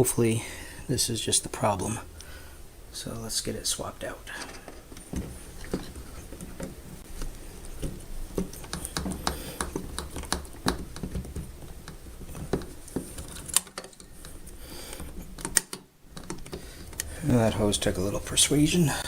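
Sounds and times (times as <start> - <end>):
clicks taps and scraping of valve: 4.3 - 17.7.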